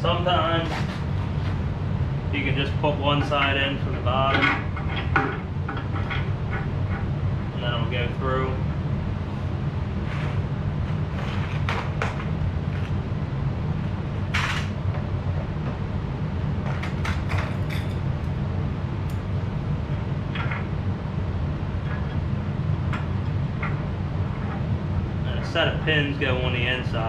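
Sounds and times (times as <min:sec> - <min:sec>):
metal clanks and scrapes: 0:16.7 - 0:18.0.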